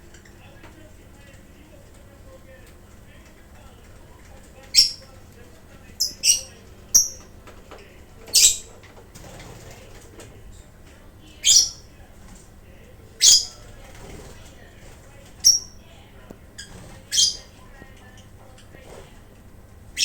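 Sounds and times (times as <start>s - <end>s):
lovebirds shrill calls: 6.0s - 7.3s, 8.3s - 8.7s, 11.4s - 11.8s, 13.2s - 13.6s, 16.6s - 17.6s.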